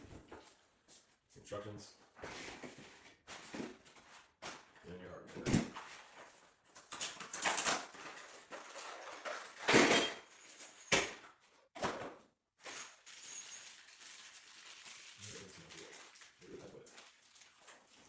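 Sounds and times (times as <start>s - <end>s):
packaging rustling: 12.7s - 18.0s.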